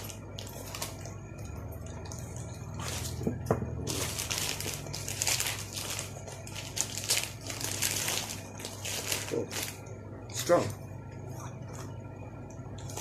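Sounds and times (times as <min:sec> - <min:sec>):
wrapping tearing and crinkling: 0:00.0 - 0:01.1, 0:02.0 - 0:09.8.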